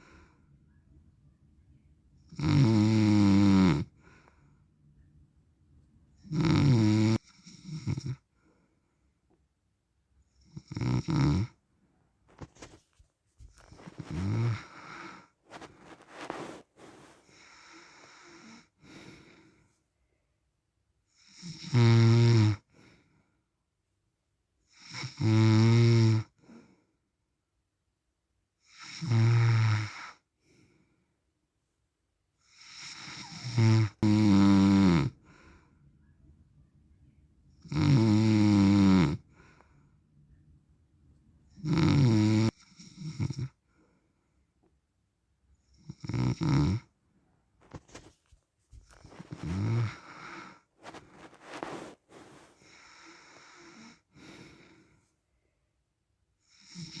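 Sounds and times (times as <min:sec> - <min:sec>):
faint breath: 0:00.0 - 0:00.6, 0:03.9 - 0:04.8, 0:13.4 - 0:19.8, 0:35.2 - 0:36.0, 0:39.3 - 0:40.1, 0:48.7 - 0:55.2
man snoring: 0:02.3 - 0:03.9, 0:06.3 - 0:08.2, 0:10.5 - 0:11.5, 0:14.0 - 0:15.2, 0:21.2 - 0:22.6, 0:24.8 - 0:26.3, 0:28.8 - 0:30.1, 0:32.6 - 0:35.2, 0:37.6 - 0:39.2, 0:41.6 - 0:43.6, 0:45.8 - 0:46.9, 0:49.3 - 0:50.6, 0:56.5 - 0:57.0.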